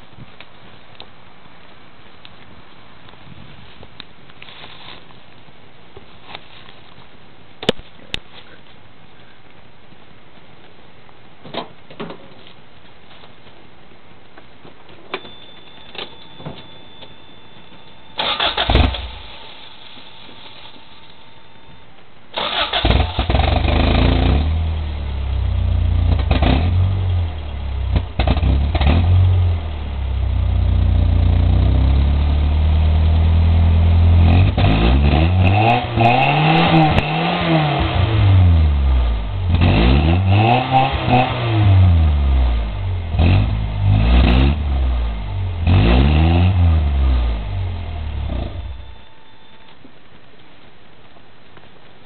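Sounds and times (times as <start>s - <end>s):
car engine idling and revving: 22.4s - 49.1s.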